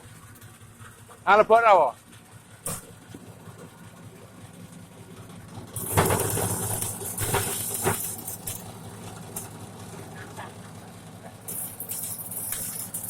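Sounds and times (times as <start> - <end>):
corn sheller motor humming: 0.0 - 13.0
corn clattering and hiss: 5.8 - 10.6, 11.3 - 13.0.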